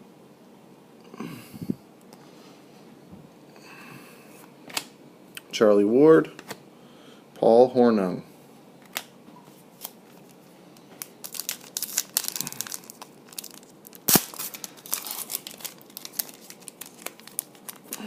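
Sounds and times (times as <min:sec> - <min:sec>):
foil wrapper tearing and crinkling: 0:11.0 - 0:18.0.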